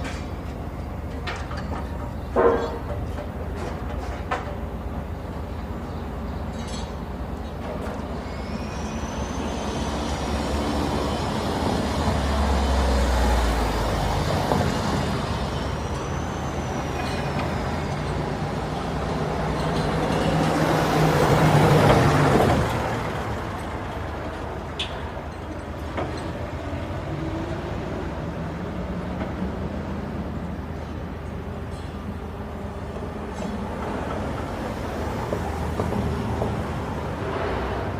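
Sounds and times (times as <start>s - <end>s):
heavy vehicles passing: 6.6s - 37.9s
faint high squeals: 8.0s - 11.5s.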